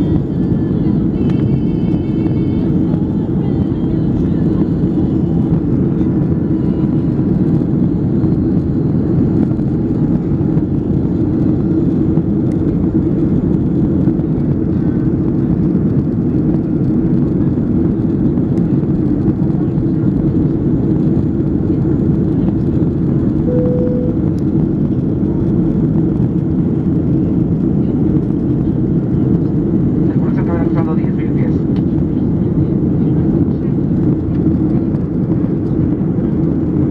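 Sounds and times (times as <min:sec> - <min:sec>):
short steady tone: 0:23.5 - 0:24.5.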